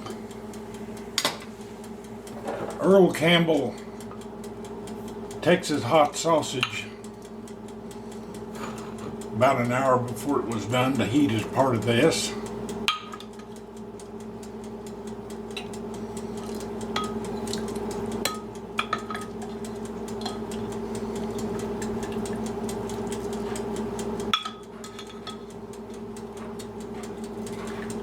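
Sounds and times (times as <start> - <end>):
steady low hum: 0.0 - 28.0
utensil clinking against pot: 18.3 - 19.6, 20.2 - 20.6, 24.3 - 25.5.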